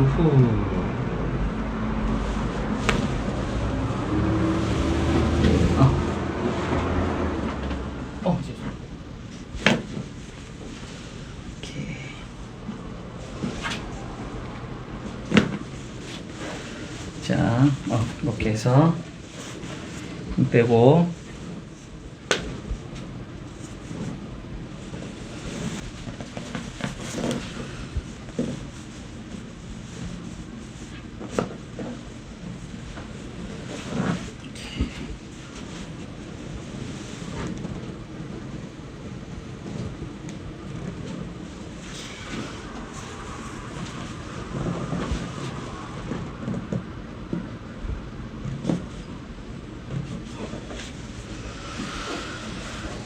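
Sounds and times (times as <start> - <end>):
low rumble: 0.0 - 18.2, 36.1 - 53.0
clothing rustling on treatment table: 1.7 - 53.0.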